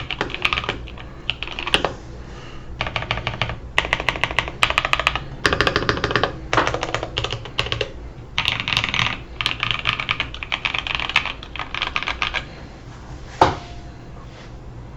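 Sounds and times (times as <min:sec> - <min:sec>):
mechanical keyboard typing: 0:00.0 - 0:01.9, 0:02.8 - 0:12.5.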